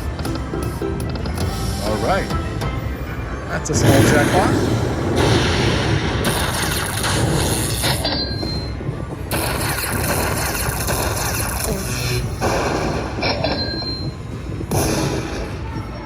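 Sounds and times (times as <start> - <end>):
slot machine win music and chimes: 0.0 - 5.0.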